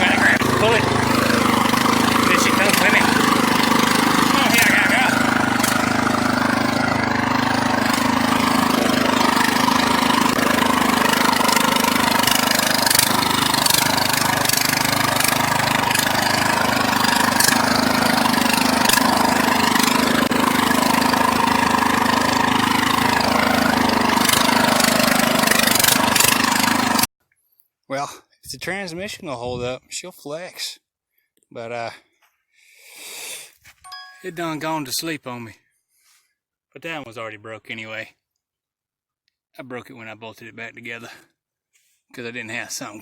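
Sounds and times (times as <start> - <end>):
lawn mower engine running: 0.0 - 27.1, 33.9 - 34.7.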